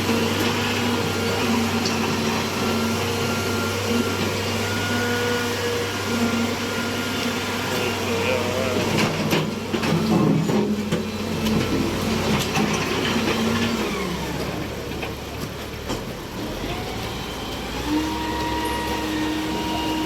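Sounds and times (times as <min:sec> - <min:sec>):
machine engine humming: 0:00.0 - 0:15.3
knocks and clatters: 0:08.8 - 0:13.8.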